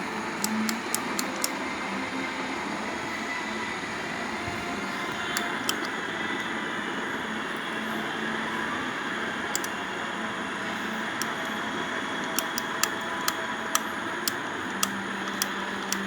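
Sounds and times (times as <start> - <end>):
sharp engine ticks: 0.4 - 1.5, 11.2 - 11.5, 12.2 - 16.0.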